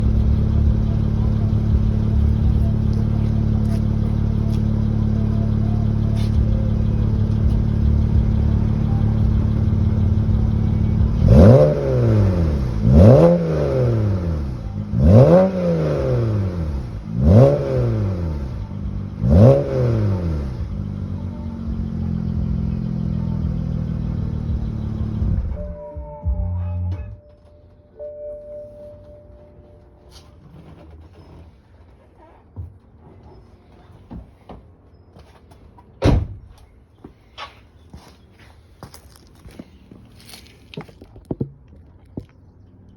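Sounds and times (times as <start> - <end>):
car engine idling and revving: 0.0 - 35.6.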